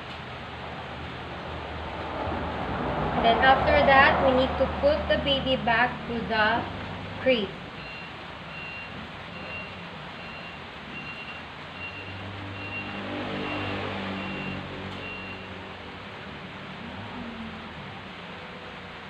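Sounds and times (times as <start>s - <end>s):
low engine rumble: 0.0s - 19.0s
reversing alarm beeping: 7.8s - 15.6s.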